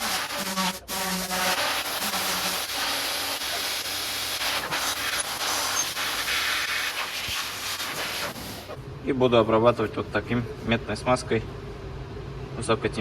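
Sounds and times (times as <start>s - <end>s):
blower rushing air hiss: 0.0s - 8.8s.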